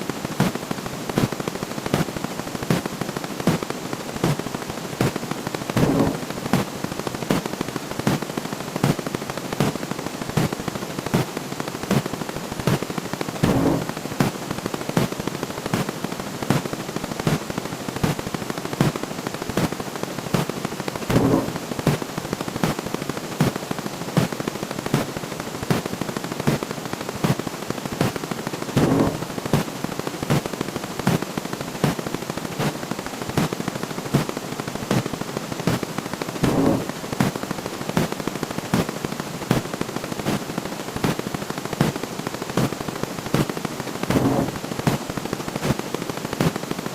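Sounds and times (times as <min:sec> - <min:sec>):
sharp rapid clicks: 0:00.0 - 0:46.9
low loud burst: 0:13.4 - 0:13.9, 0:21.1 - 0:21.6, 0:36.4 - 0:36.9.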